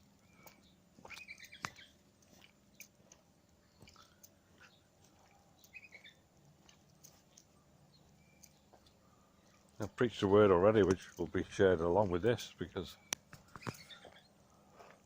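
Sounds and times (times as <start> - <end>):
songbird chirps: 0.0 - 15.0
soft clicks: 13.1 - 14.0.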